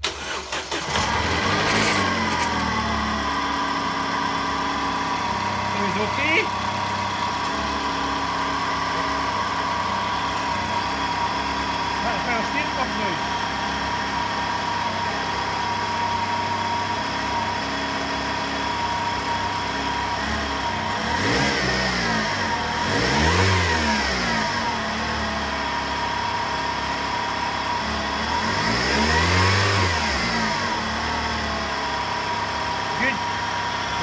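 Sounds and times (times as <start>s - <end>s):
car engine idling and revving: 0.0s - 34.0s
power steering pump whine: 0.0s - 34.0s.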